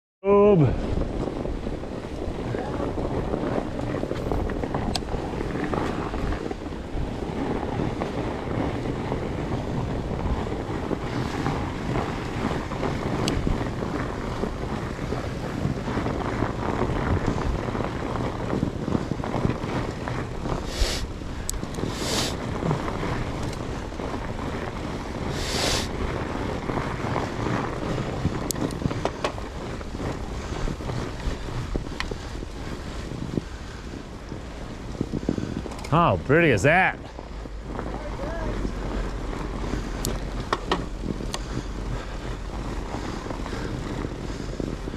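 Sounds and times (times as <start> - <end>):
bike tyres rumbling through snow: 0.2 - 44.9
wind buffeting microphone: 0.3 - 44.9
short hissing bursts: 20.7 - 21.1, 21.9 - 22.4, 25.4 - 25.9.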